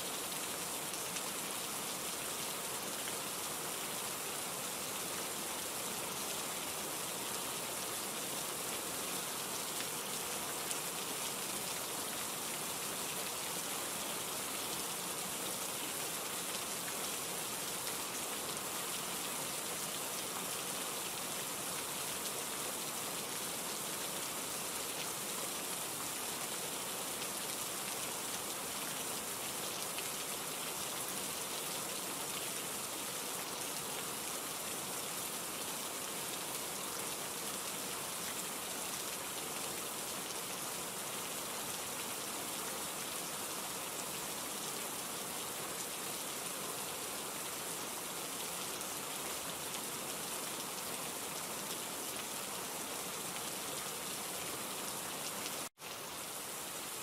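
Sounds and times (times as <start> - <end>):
steady rain patter: 0.0 - 57.0.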